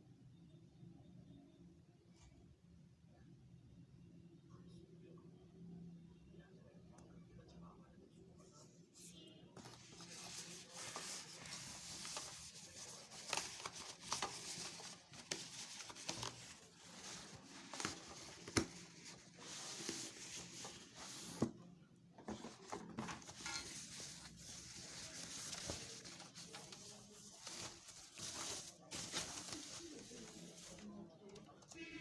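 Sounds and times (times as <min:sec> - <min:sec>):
packaging rustling and crinkling: 0:09.6 - 0:21.5, 0:22.3 - 0:30.9.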